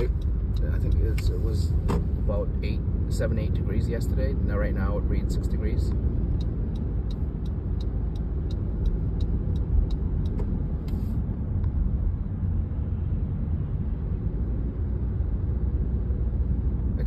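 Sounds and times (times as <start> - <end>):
light even ticking: 0.0 - 2.0, 5.9 - 11.0
car engine and road rumble: 0.0 - 17.0.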